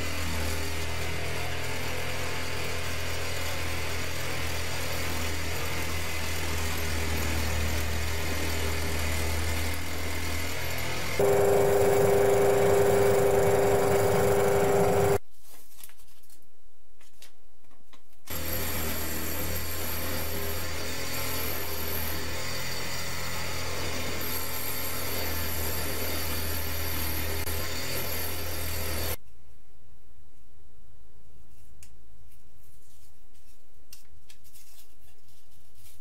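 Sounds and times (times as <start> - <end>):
power tool cutting wood: 10.0 - 15.2, 18.3 - 29.2.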